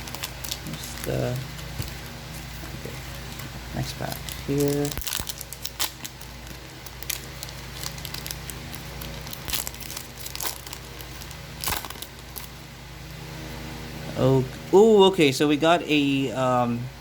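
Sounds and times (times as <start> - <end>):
foil wrapper crinkling and tearing: 0.0 - 12.6.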